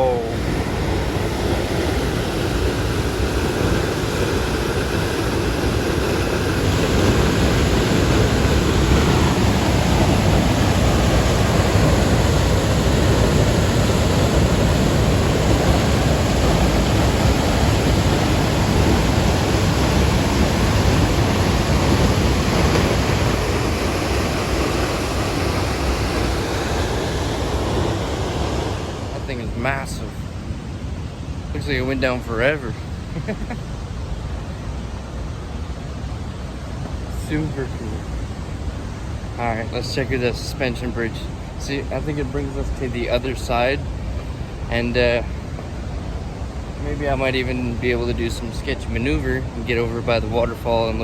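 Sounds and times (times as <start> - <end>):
waterfall rushing: 0.0 - 51.0.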